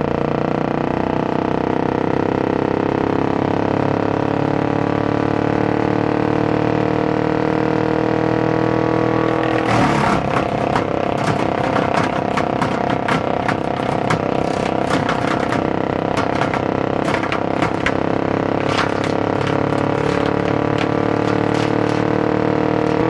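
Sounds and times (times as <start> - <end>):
wood chipper chipping wood: 9.2 - 23.0.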